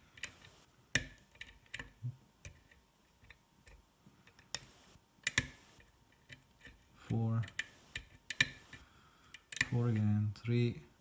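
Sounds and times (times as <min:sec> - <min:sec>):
lock pick metallic clicks: 0:00.1 - 0:06.7, 0:09.3 - 0:10.1.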